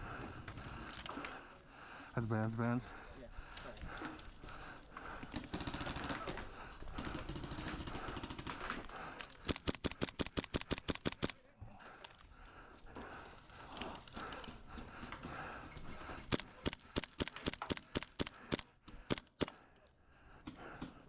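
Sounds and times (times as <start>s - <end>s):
airsoft gun firing bursts: 5.3s - 8.8s, 9.4s - 11.4s, 16.2s - 19.6s.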